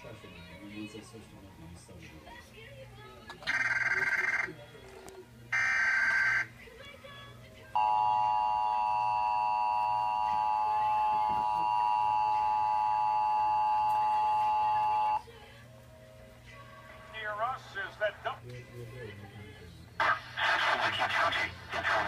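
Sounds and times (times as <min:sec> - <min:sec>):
emergency attention tone: 0:03.5 - 0:04.6, 0:07.8 - 0:15.2.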